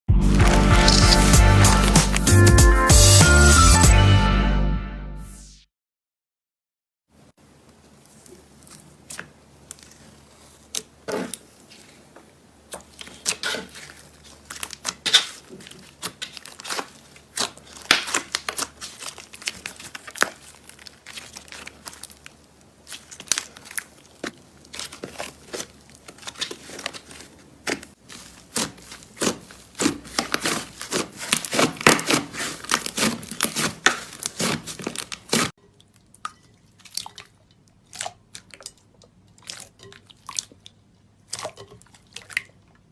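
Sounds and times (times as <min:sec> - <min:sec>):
slime crackling and popping: 0:00.3 - 0:02.4, 0:12.7 - 0:35.6.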